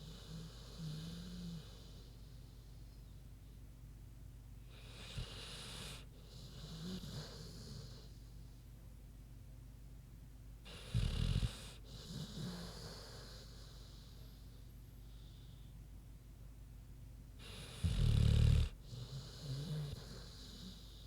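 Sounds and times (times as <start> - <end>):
dog snoring: 0.0 - 2.3, 4.7 - 8.2, 10.7 - 14.5, 17.4 - 21.0.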